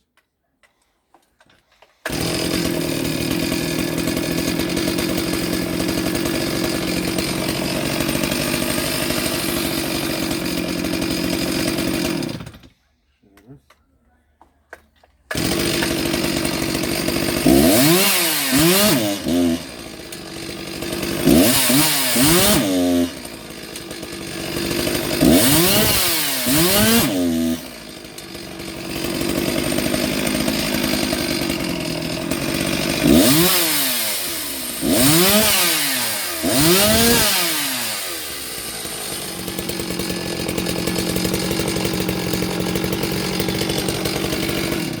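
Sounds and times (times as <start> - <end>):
chainsaw idling and revving: 2.0 - 12.8, 14.7 - 45.0.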